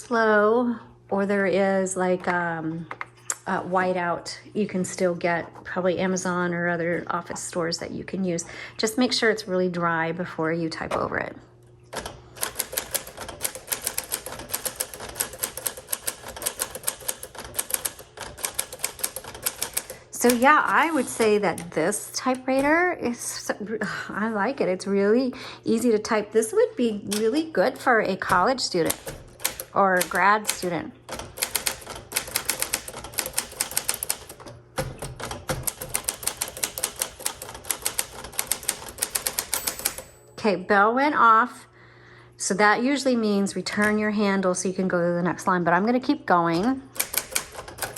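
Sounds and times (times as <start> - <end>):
manual typewriter keystrokes: 11.9 - 22.8, 27.0 - 40.2, 46.6 - 47.9.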